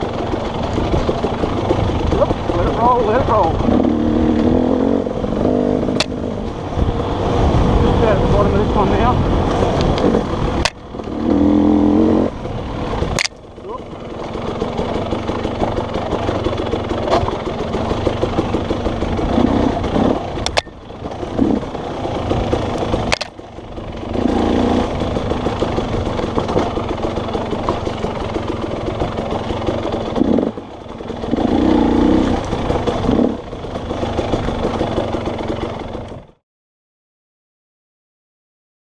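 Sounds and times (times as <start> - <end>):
dirt bike engine revving: 0.0 - 36.4.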